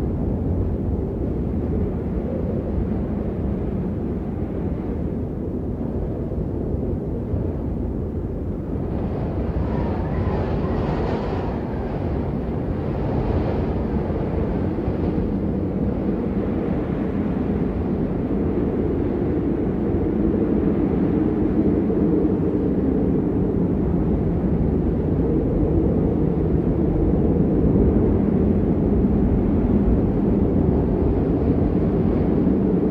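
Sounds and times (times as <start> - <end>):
wind blowing: 8.4 - 18.1.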